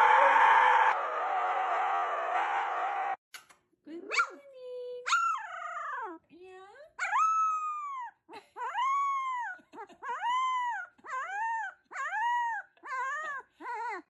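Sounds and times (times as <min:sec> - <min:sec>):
dog howling: 0:00.0 - 0:03.2.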